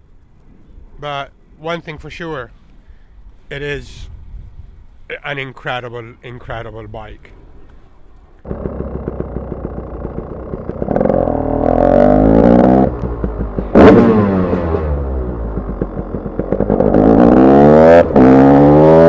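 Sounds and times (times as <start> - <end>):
two-stroke motorcycle engine revving: 8.4 - 19.0.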